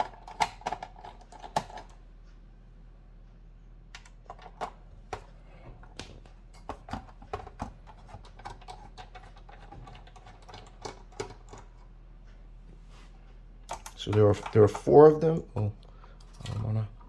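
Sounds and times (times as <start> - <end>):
low steady hum: 0.0 - 17.0
screwdriver and screws clicking on metal: 13.7 - 15.0.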